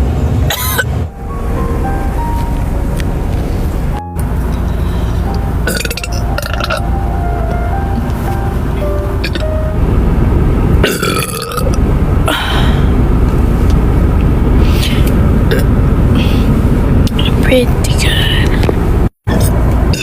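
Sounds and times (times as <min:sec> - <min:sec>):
low rumble: 0:00.0 - 0:19.9
person belching: 0:05.7 - 0:06.8, 0:10.8 - 0:11.8.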